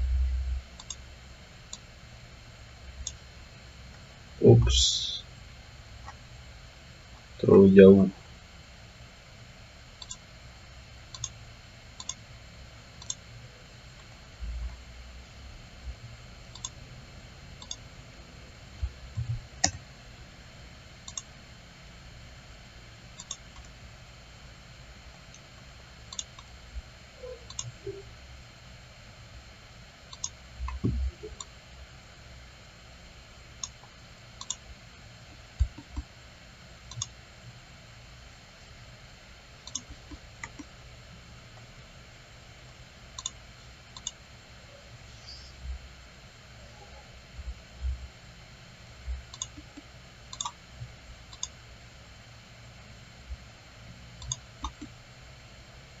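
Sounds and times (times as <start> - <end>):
mouse buttons clicking: 23.2 - 23.7, 49.3 - 50.6
soft low thumps: 30.7 - 31.2.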